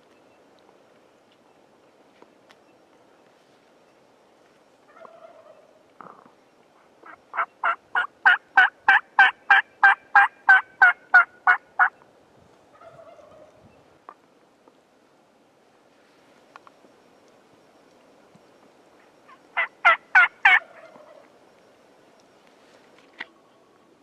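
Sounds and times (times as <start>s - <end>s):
turkey yelping: 4.9s - 5.7s, 7.0s - 12.0s, 12.7s - 13.5s, 19.3s - 21.3s.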